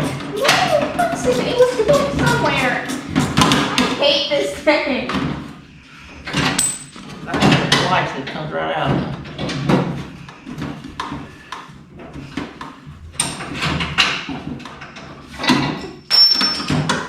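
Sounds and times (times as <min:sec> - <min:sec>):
hand tools clinking on metal: 0:06.3 - 0:07.8, 0:15.6 - 0:17.0.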